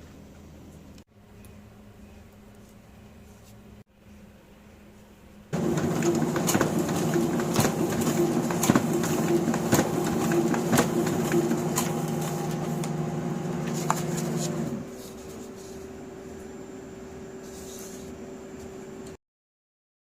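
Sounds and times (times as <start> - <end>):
fan hum: 5.5 - 19.2
laser printer sharp knocking: 5.6 - 14.8
drive winding down whine: 5.6 - 14.9.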